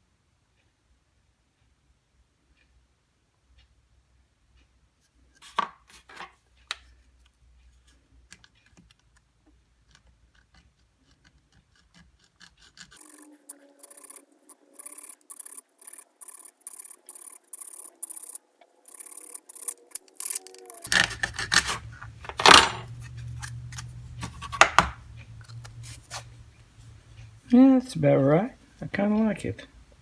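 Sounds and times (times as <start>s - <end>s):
hand file rasping: 9.9s - 22.2s
clicks and knocks of tools: 13.0s - 26.4s.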